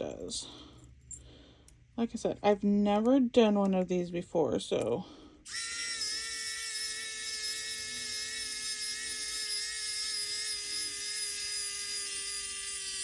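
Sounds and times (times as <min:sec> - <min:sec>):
electric screwdriver whining: 0:05.5 - 0:13.0.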